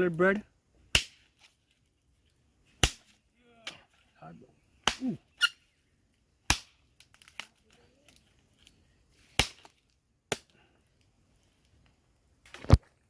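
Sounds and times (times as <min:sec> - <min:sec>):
sharp snaps: 0:00.9 - 0:01.2, 0:02.8 - 0:03.8, 0:04.8 - 0:05.6, 0:06.5 - 0:07.5.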